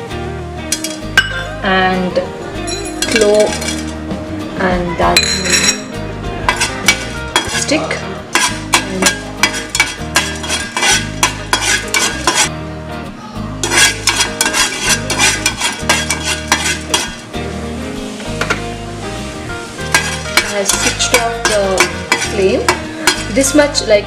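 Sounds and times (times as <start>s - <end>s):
background music: 0.0s - 24.0s
spices rattling in a pan: 3.0s - 3.9s, 6.5s - 7.7s, 8.3s - 12.5s, 13.6s - 17.2s, 19.9s - 23.6s.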